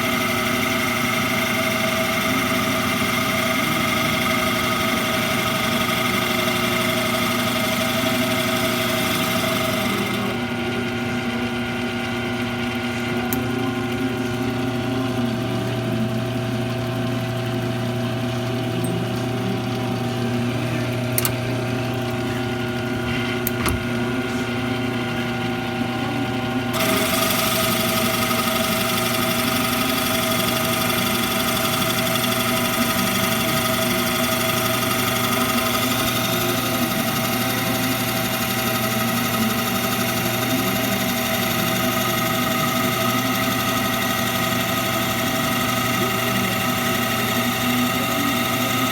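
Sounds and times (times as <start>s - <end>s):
lathe tool cutting wood hiss: 0.0s - 10.5s, 26.7s - 48.9s
lathe motor hum: 0.0s - 48.9s.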